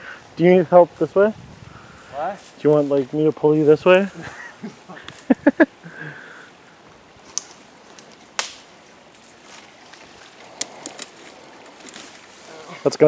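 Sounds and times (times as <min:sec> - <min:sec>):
twigs snapping and crackling: 0:07.2 - 0:12.4.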